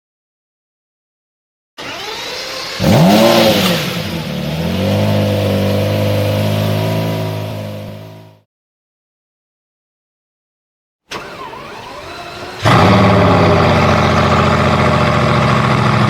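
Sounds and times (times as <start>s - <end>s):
sports car engine starting: 1.8s - 8.4s, 11.1s - 16.0s.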